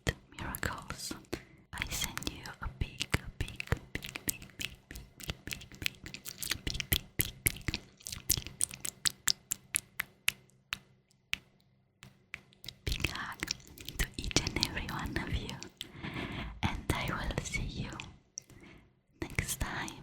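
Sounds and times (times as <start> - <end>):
sharp asmr clicks: 3.0 - 15.9.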